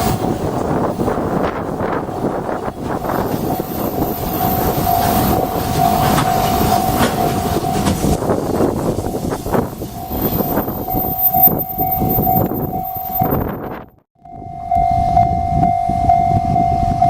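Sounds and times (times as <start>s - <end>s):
train wheels clattering: 0.0s - 12.8s
level crossing warning bell: 1.4s - 17.0s.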